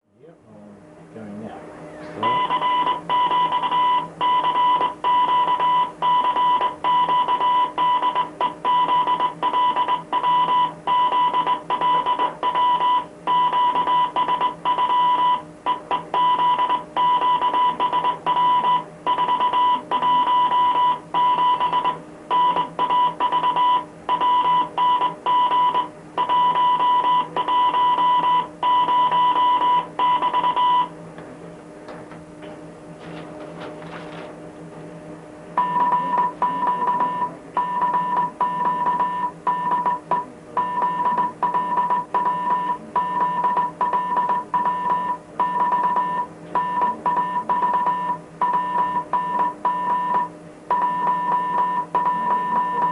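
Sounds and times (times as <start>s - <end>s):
morse code tone: 2.2s - 31.0s, 35.5s - 52.9s.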